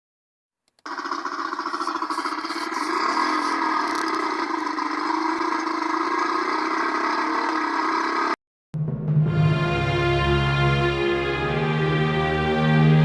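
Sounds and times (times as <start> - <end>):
engine running: 0.8 - 8.4.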